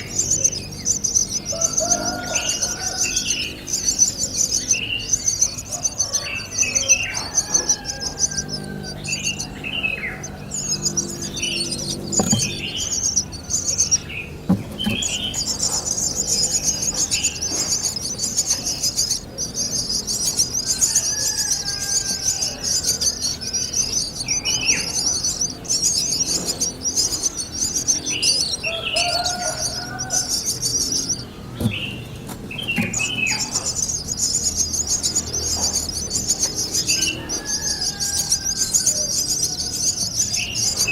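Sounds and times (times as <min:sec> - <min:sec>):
birds chirping: 0:00.0 - 0:40.9.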